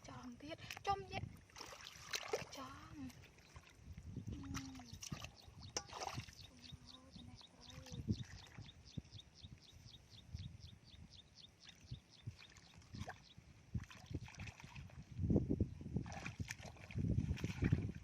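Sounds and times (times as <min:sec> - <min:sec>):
water sloshing and splashing: 0:00.0 - 0:08.8, 0:11.7 - 0:15.3, 0:16.0 - 0:18.0.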